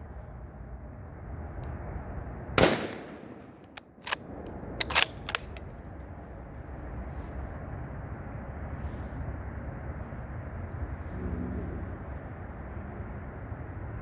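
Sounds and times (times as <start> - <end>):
rifle shot: 2.6 - 5.6.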